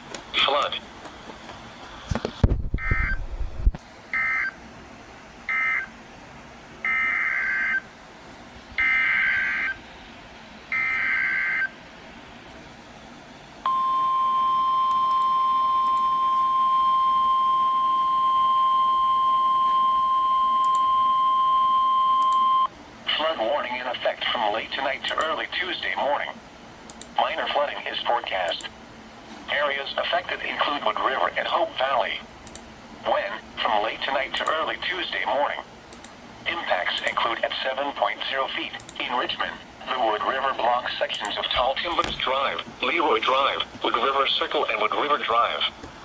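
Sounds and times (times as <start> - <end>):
low rumble: 2.4 - 3.8
steady warning alarm tone: 5.5 - 5.9, 6.8 - 7.9, 8.8 - 9.8, 10.7 - 11.8, 13.6 - 22.7.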